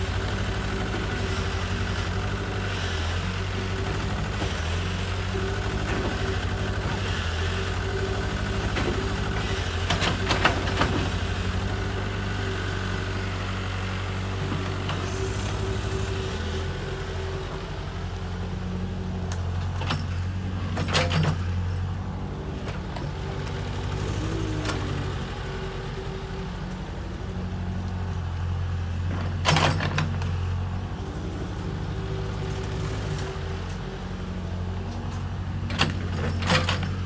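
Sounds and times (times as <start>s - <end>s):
excavator diesel engine running: 0.0s - 37.0s.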